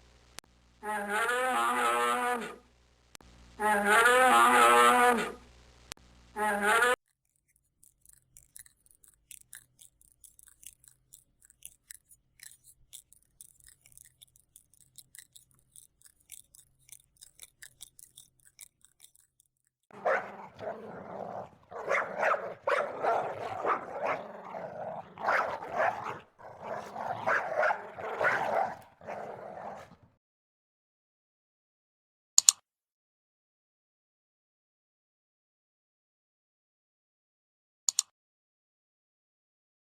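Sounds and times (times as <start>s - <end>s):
dog barking short calls: 19.9s - 30.0s
sharp click: 37.9s - 38.1s.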